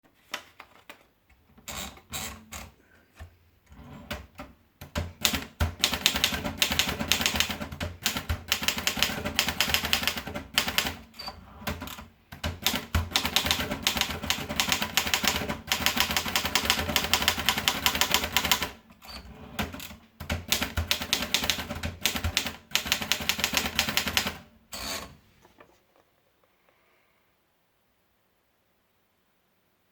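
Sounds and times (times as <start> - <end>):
typewriter keys clacking: 19.6 - 24.4.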